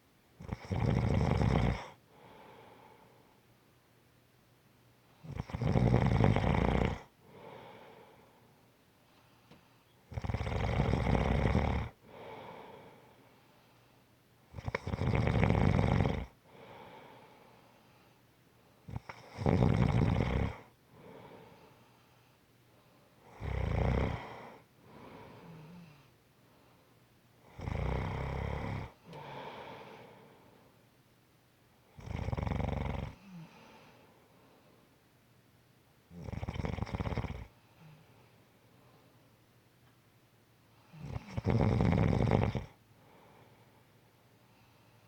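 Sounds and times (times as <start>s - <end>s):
loud rough snores: 0.4s - 2.0s, 5.2s - 7.8s, 10.1s - 12.8s, 14.5s - 17.0s, 18.9s - 21.4s, 23.3s - 26.0s, 27.5s - 30.0s, 31.9s - 33.7s, 36.1s - 37.6s, 40.9s - 42.8s
soft breath: 1.9s - 3.5s, 7.2s - 10.0s, 12.0s - 14.2s, 16.4s - 18.9s, 20.6s - 23.3s, 24.1s - 27.1s, 28.9s - 30.9s, 33.1s - 35.0s, 37.4s - 39.5s, 42.9s - 45.0s.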